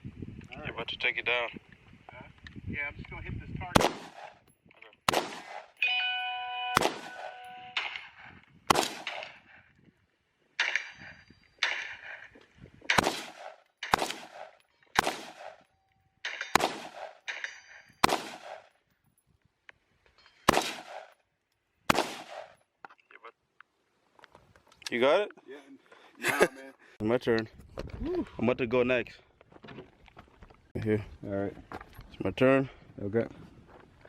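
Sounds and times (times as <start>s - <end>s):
gunshots: 3.7s - 4.4s, 5.0s - 5.8s, 6.7s - 9.6s, 12.9s - 15.6s, 16.2s - 18.7s, 20.4s - 21.2s, 21.9s - 22.6s
steel target ringing: 5.8s - 7.8s.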